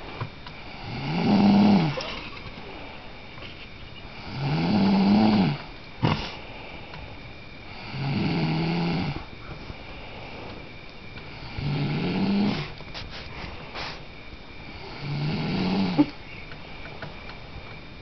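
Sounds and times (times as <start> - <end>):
loud snoring: 0.7 - 2.0, 4.2 - 6.4, 7.7 - 9.2, 11.4 - 12.7, 14.8 - 16.1.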